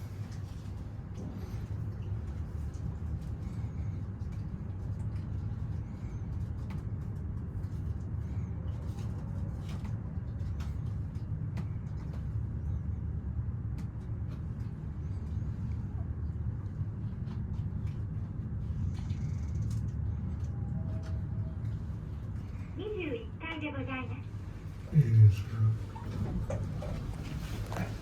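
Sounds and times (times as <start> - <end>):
elevator low rumble: 0.0 - 28.0.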